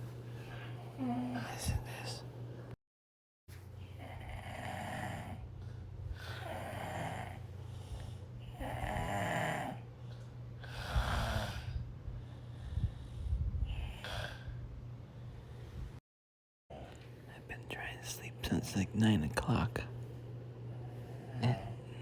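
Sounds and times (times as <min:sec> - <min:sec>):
person snoring: 0:04.0 - 0:05.4, 0:06.2 - 0:07.5, 0:08.5 - 0:09.8, 0:10.6 - 0:11.7, 0:21.2 - 0:22.0.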